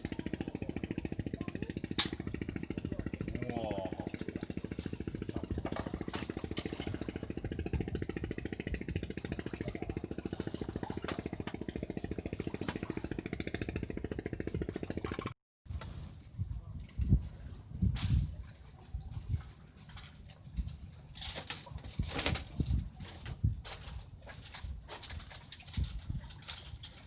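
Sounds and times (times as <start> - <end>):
small engine running: 0.0 - 15.4.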